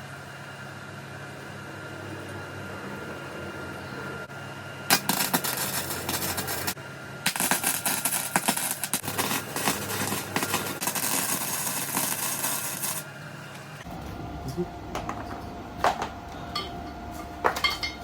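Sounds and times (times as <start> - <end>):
welding arc crackling: 4.9 - 13.9.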